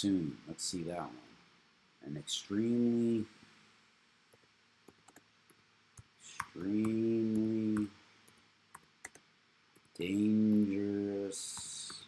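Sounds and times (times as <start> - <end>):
computer clicks: 4.9 - 5.3, 8.8 - 9.2
man humming uhh: 10.5 - 12.0.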